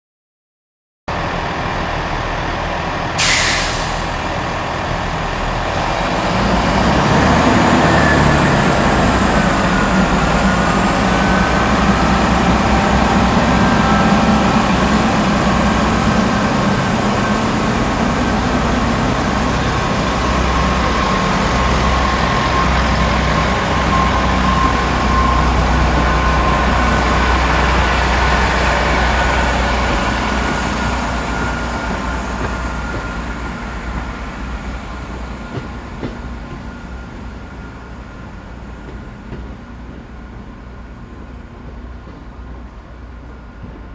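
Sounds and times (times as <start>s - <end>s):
diesel train engine with whine: 1.1s - 43.9s
air brakes hissing: 3.2s - 4.5s.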